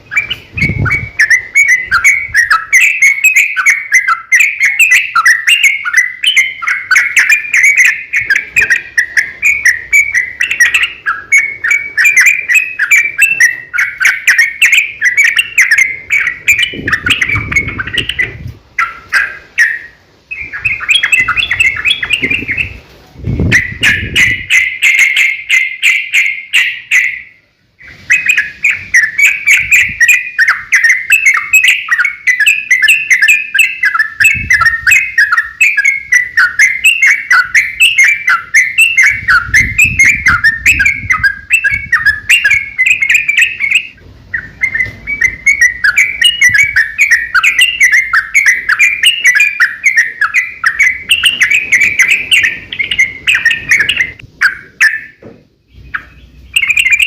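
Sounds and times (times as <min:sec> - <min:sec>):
bulbul singing rapid chirping runs: 0:00.0 - 0:57.0.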